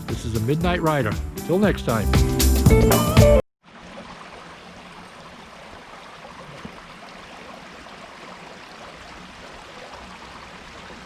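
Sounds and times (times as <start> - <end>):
running water rushing: 3.6 - 11.0.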